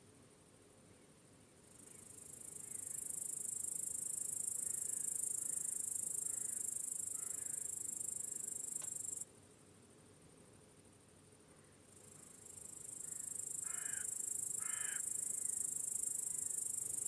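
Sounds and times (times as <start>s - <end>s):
crickets trilling: 1.7s - 9.2s, 11.9s - 17.0s.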